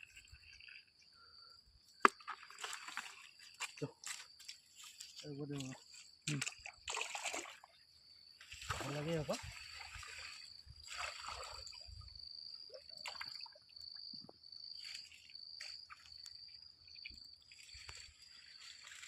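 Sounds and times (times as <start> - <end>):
insects droning: 0.0 - 19.0
splashes in shallow water: 2.0 - 4.2, 5.5 - 7.8, 8.4 - 12.1, 12.7 - 13.7.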